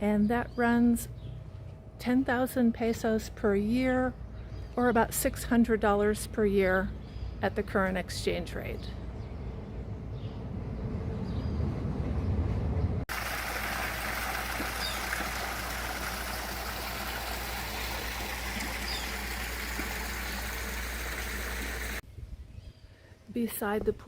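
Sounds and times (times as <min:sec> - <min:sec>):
fountain splashing into pool: 0:13.1 - 0:22.0.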